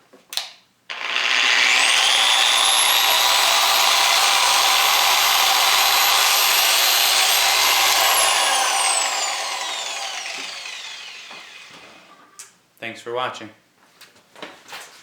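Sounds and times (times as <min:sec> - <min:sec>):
polisher whining: 0:00.9 - 0:12.1.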